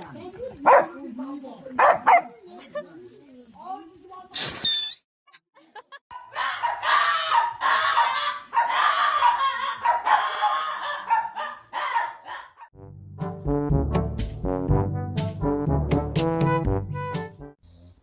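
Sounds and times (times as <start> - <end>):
dog barking harshly: 0.6 - 1.0, 1.8 - 2.3, 6.6 - 12.7
brass music: 12.8 - 17.6.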